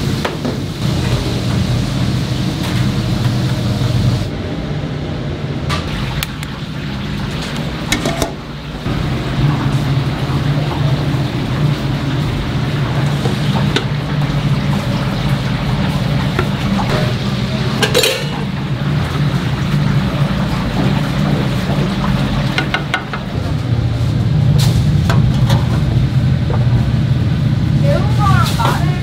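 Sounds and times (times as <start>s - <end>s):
low mechanical hum: 0.0s - 29.0s
dishes clinking: 7.9s - 8.4s, 16.4s - 18.6s.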